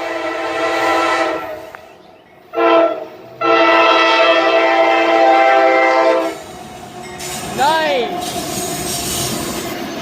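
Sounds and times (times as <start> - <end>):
locomotive air horn blasts: 0.0 - 1.7, 2.5 - 6.4.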